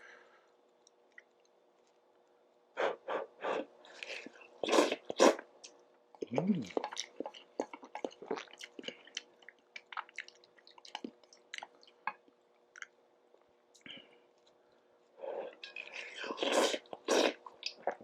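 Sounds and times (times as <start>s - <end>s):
wet chewing clicks: 4.7s - 13.0s
noodles slurped: 15.4s - 18.0s.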